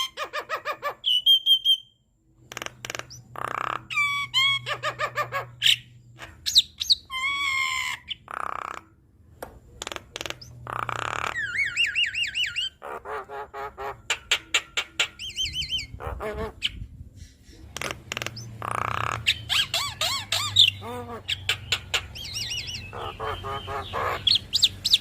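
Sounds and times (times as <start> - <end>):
bird singing chattering song: 0.0 - 9.0, 9.7 - 25.0.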